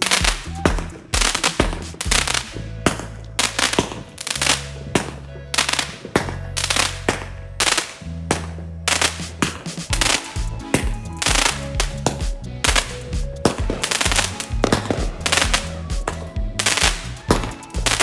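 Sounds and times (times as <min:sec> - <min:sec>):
fireworks bangs and crackles: 0:00.0 - 0:02.4, 0:08.9 - 0:12.9, 0:13.5 - 0:18.0
background music with bass: 0:00.0 - 0:18.0.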